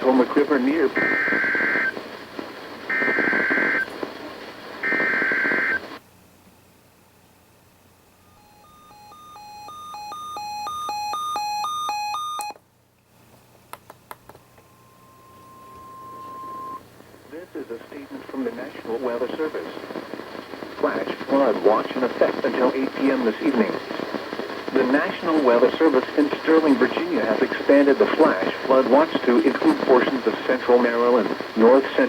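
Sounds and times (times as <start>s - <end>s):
steady warning alarm tone: 8.4s - 12.6s, 14.5s - 16.8s
alert receiver beeping on two pitches: 14.6s - 16.8s.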